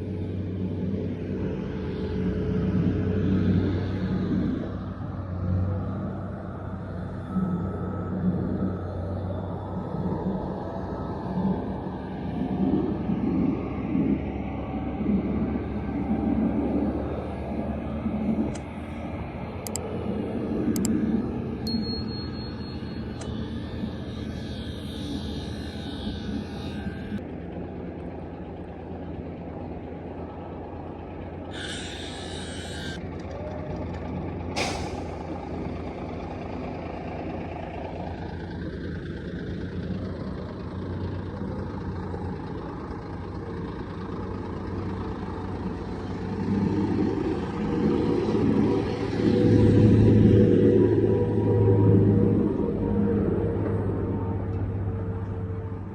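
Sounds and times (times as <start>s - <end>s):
diesel truck engine running: 0.0s - 55.9s
truck engine approaching: 0.0s - 55.9s
air hiss: 31.5s - 33.0s.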